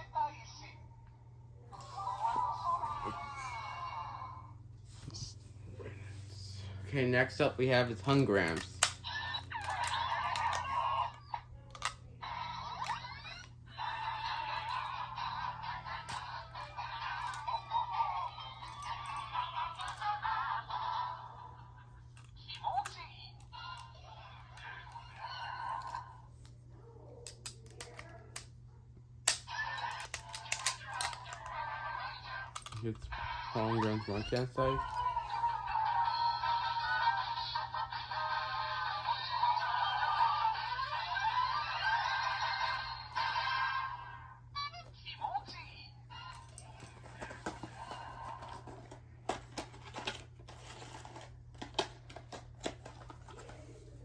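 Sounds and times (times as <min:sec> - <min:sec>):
plastic pieces clicking: 0:29.2 - 0:31.6, 0:32.4 - 0:33.1, 0:48.3 - 0:53.6.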